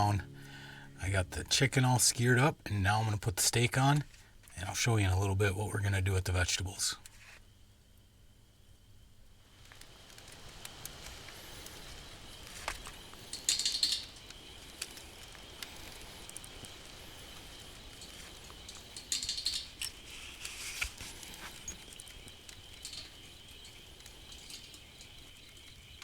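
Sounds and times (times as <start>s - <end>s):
faint steady hiss: 0.0s - 26.0s
wood fire crackling: 0.0s - 26.0s
fire popping: 7.0s - 26.0s.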